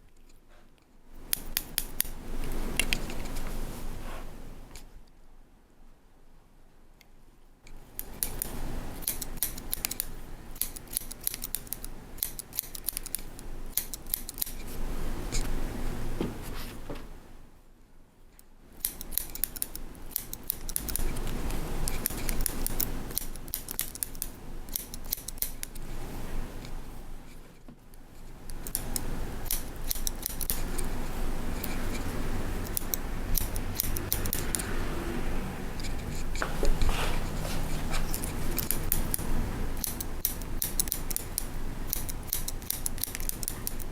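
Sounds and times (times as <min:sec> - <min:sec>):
scissors snipping hair: 0:01.3 - 0:02.2, 0:08.0 - 0:14.8, 0:18.8 - 0:25.9, 0:28.5 - 0:31.0, 0:31.6 - 0:35.0, 0:35.8 - 0:43.9.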